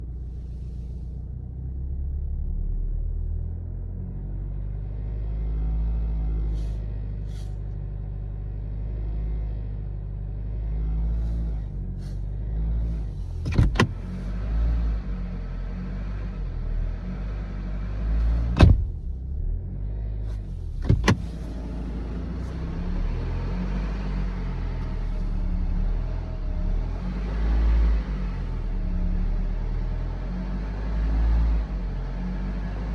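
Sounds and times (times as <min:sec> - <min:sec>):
diesel engine running cold: 0:00.0 - 0:15.5, 0:18.0 - 0:32.9
diesel engine running with knock: 0:13.2 - 0:14.2, 0:18.2 - 0:19.1, 0:20.5 - 0:22.6
sharp engine knocks: 0:13.4 - 0:14.2, 0:18.6 - 0:19.0, 0:20.8 - 0:21.5.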